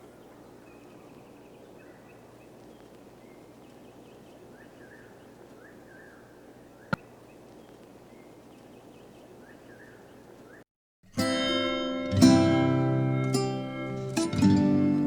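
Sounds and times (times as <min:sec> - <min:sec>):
low background hiss: 0:00.0 - 0:10.6
birds chirping: 0:00.0 - 0:10.7.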